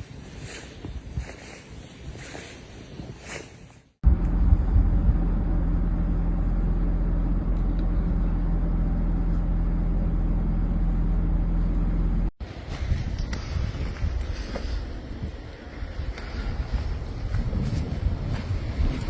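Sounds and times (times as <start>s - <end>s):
constant low hum: 4.0s - 19.0s
road noise: 4.0s - 19.0s
vehicle engine rumble: 4.0s - 19.0s.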